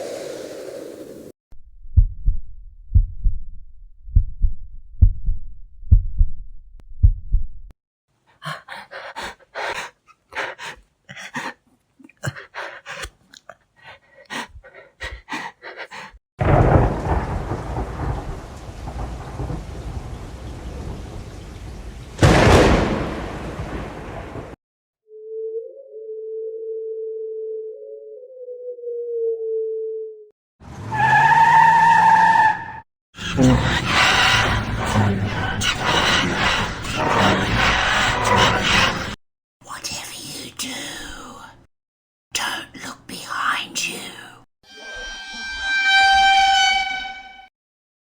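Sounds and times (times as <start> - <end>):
heartbeat thumps: 1.8 - 7.7
loud thunder crack: 16.4 - 24.6
steady rain: 16.4 - 24.6.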